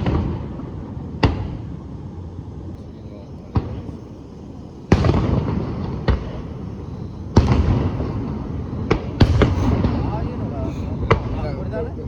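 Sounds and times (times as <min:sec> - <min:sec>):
firework bangs with echo: 0:00.0 - 0:01.9, 0:02.8 - 0:12.0.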